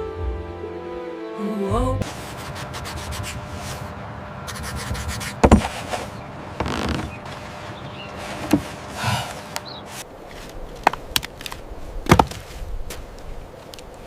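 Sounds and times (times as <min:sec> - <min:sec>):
knocks and thuds: 0:05.4 - 0:05.7, 0:12.0 - 0:13.0
soft rustling: 0:05.5 - 0:14.0.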